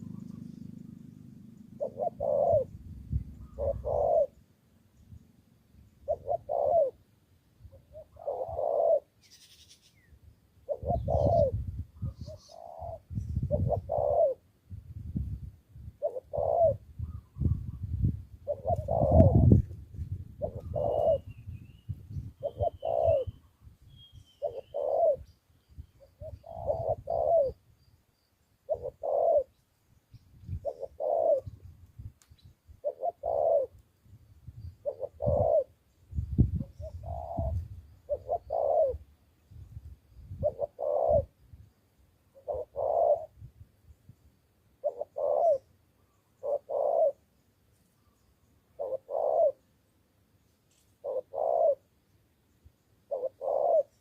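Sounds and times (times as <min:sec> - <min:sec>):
dove cooing: 0:00.0 - 0:04.5, 0:06.0 - 0:07.1, 0:07.7 - 0:09.6, 0:10.6 - 0:14.5, 0:16.0 - 0:21.6, 0:22.2 - 0:23.5, 0:24.4 - 0:25.3, 0:26.0 - 0:27.6, 0:28.7 - 0:29.6, 0:30.5 - 0:31.7, 0:32.8 - 0:33.8, 0:34.7 - 0:35.8, 0:36.4 - 0:39.1, 0:40.3 - 0:41.4, 0:42.3 - 0:43.4, 0:44.8 - 0:47.2, 0:48.7 - 0:49.6, 0:51.0 - 0:51.9, 0:53.0 - 0:54.0
small bird chirping: 0:00.0 - 0:07.0, 0:07.6 - 0:14.4, 0:20.3 - 0:54.0.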